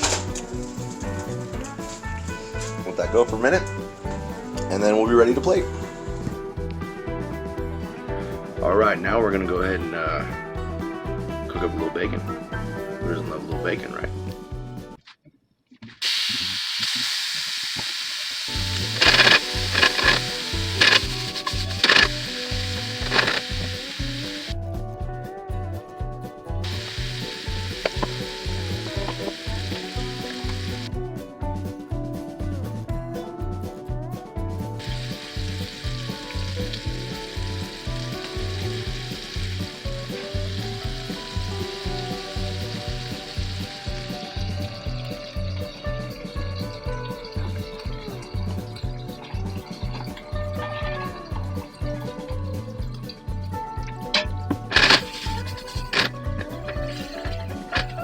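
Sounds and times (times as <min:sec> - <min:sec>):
music with a steady beat: 0:00.0 - 0:15.0, 0:18.5 - 0:58.0
bacon sizzling in a pan: 0:16.0 - 0:24.6, 0:26.6 - 0:30.9, 0:34.8 - 0:52.2, 0:54.6 - 0:58.0.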